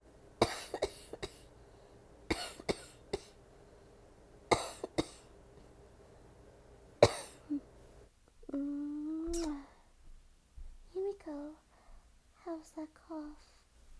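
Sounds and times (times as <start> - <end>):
woman coughing: 0.4 - 1.5, 2.3 - 3.4, 4.5 - 5.3, 7.0 - 7.6.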